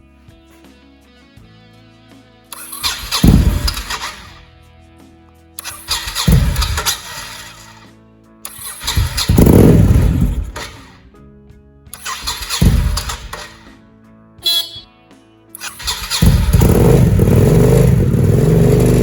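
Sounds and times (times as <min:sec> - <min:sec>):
faint background music: 0:00.0 - 0:17.3
motorcycle engine starting: 0:02.5 - 0:04.5, 0:05.6 - 0:07.9, 0:08.5 - 0:11.1, 0:12.0 - 0:13.8, 0:14.4 - 0:14.8, 0:15.6 - 0:19.0.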